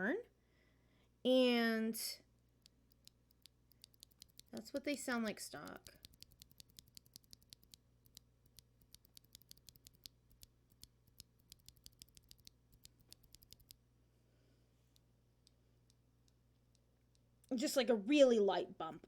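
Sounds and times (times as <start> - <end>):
keyboard switches clacking: 2.7 - 4.9, 5.6 - 13.8.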